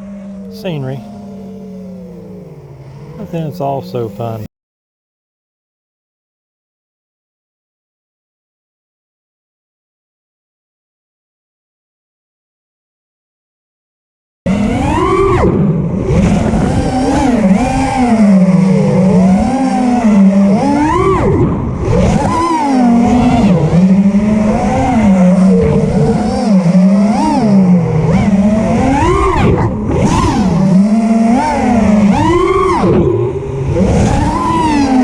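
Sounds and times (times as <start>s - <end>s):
drone motors and propellers whining: 0.0s - 4.5s, 14.5s - 35.0s.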